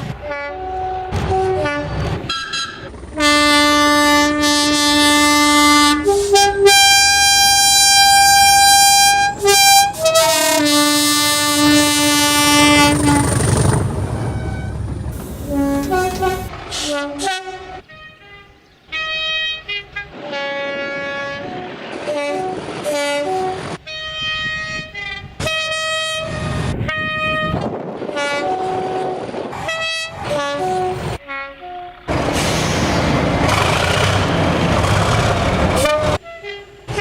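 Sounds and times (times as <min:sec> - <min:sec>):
train rumble: 0:00.0 - 0:17.9, 0:19.6 - 0:37.0
locomotive air horns sounding chords: 0:00.1 - 0:13.4, 0:14.2 - 0:27.6, 0:28.2 - 0:32.8, 0:35.7 - 0:37.0.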